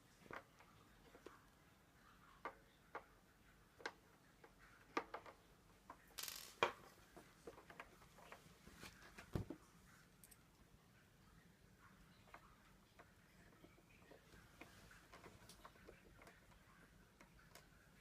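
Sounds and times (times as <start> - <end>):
faint clicks and light taps: 11.8 - 18.0.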